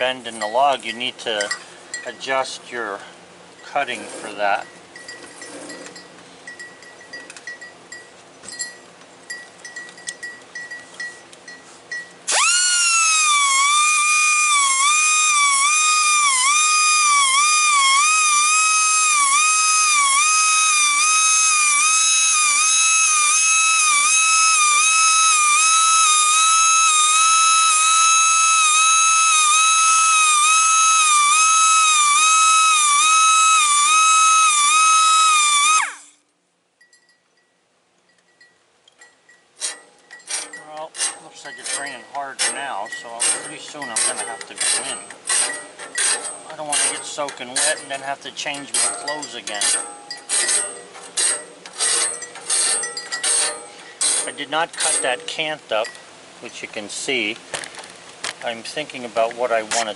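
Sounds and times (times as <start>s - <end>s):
light ticking and clinking: 4.6s - 12.2s, 36.8s - 56.1s
grinding wheel high whine: 12.3s - 36.2s, 40.4s - 55.4s.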